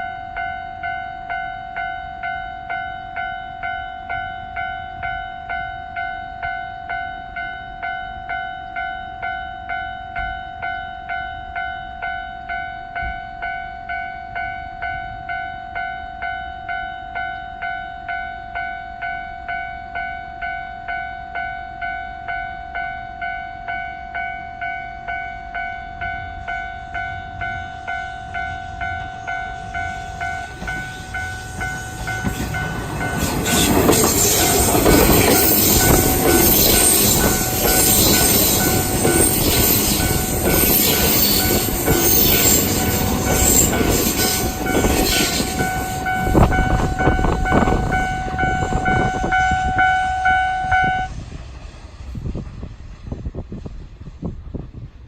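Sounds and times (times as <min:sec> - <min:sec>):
level crossing warning bell: 0:00.0 - 0:51.1
train wheels clattering over rail joints: 0:30.5 - 0:48.0.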